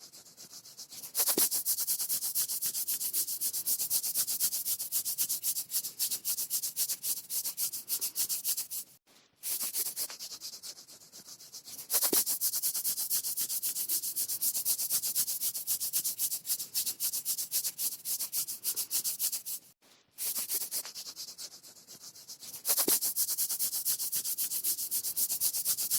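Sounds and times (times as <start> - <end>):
skin being scratched rapidly: 0.0 - 25.9.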